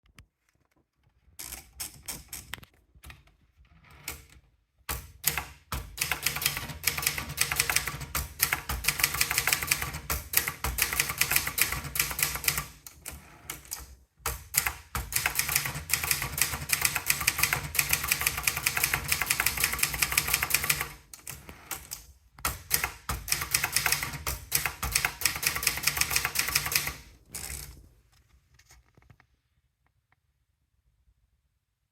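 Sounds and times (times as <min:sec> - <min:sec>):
typewriter keystrokes: 0:04.9 - 0:27.7.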